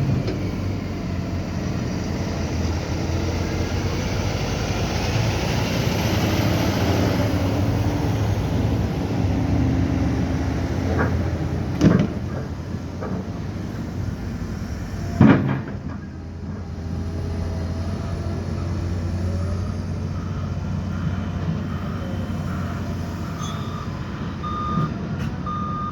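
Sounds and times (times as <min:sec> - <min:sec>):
diesel engine running: 0:00.0 - 0:25.9
loud clunk: 0:10.9 - 0:13.3, 0:15.2 - 0:16.6
reversing alarm beeping: 0:18.0 - 0:25.9.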